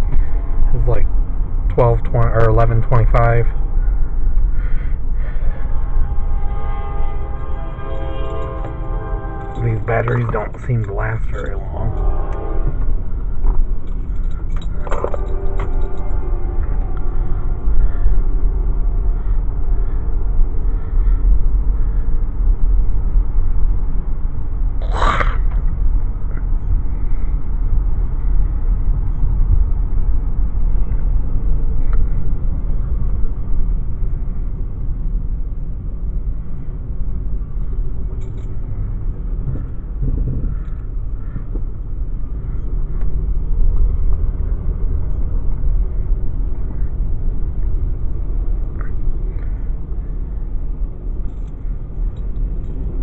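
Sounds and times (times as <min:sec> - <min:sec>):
train rumbling past: 0:00.0 - 0:53.0.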